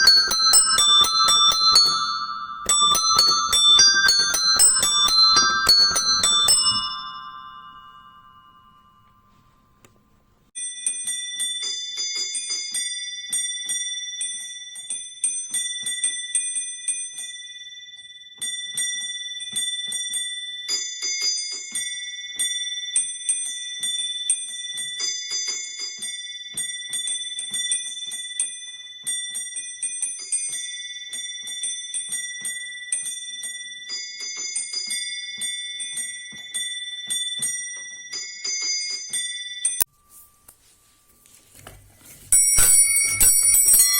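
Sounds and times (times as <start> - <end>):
small bells pealing: 0.0 - 9.8, 42.2 - 43.9.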